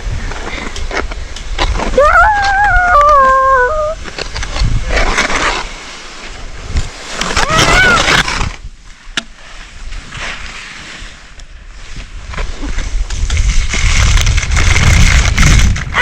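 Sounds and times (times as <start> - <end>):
wind on microphone: 0.0 - 9.1, 9.7 - 16.0
person crying out: 2.0 - 4.0, 7.4 - 8.2
skis scraping over snow: 3.8 - 16.0.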